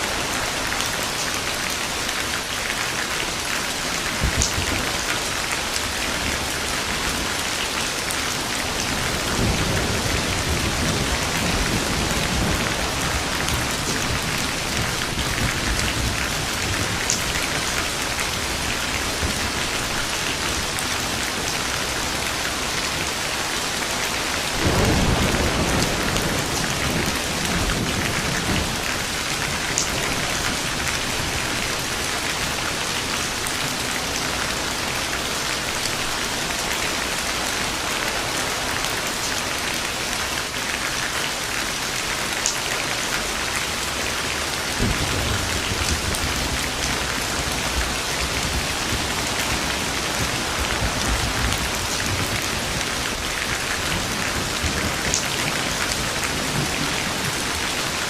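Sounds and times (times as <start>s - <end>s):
heavy rain falling: 0.0s - 58.0s
thunder rumbling: 3.8s - 40.6s, 42.8s - 58.0s.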